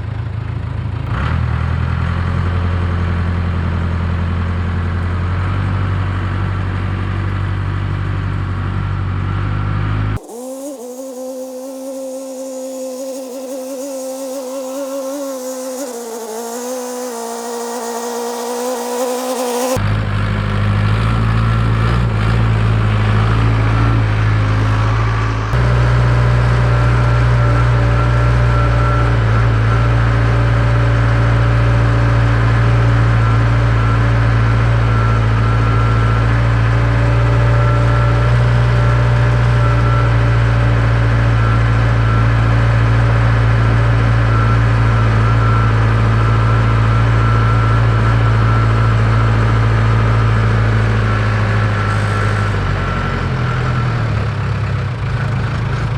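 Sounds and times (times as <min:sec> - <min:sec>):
thin wavering hum: 0:10.2 - 0:19.8.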